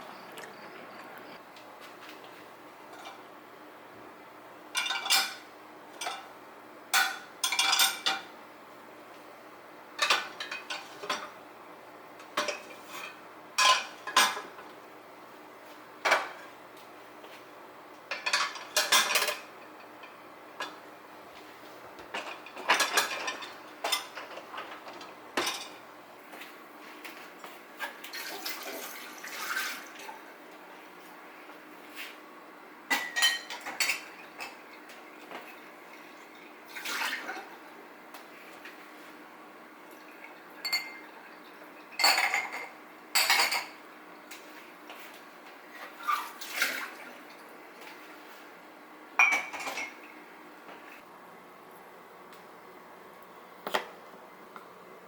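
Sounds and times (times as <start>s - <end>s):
cutlery and dishes clinking: 4.8s - 6.3s, 7.0s - 8.3s, 22.1s - 25.8s.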